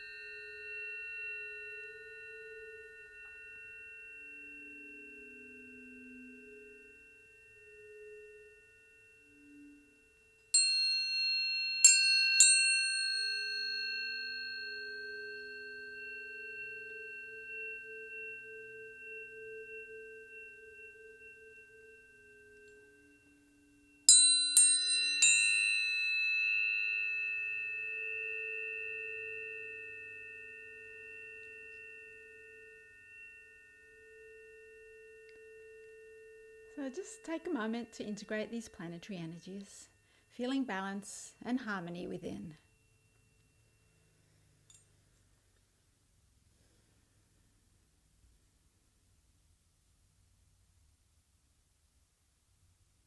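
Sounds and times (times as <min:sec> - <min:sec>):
tuning forks ringing: 0:00.0 - 0:48.1
tuning fork strike click: 0:33.6 - 0:38.1.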